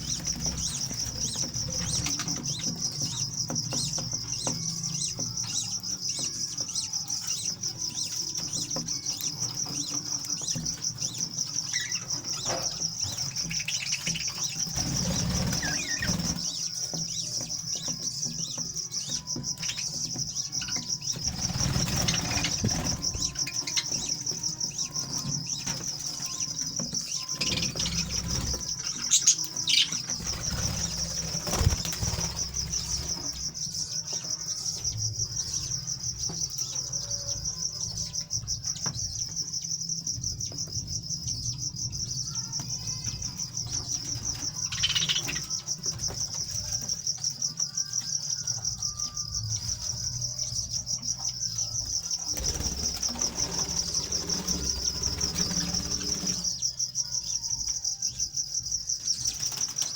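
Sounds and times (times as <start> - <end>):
parrots chirping: 0.0 - 34.5, 42.3 - 46.7, 51.4 - 57.5
parrots flapping wings: 13.6 - 16.6, 30.1 - 33.4, 52.3 - 56.5.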